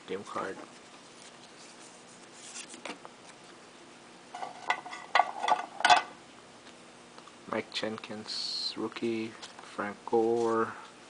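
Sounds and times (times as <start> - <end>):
cards sliding and rubbing: 0.4 - 3.6.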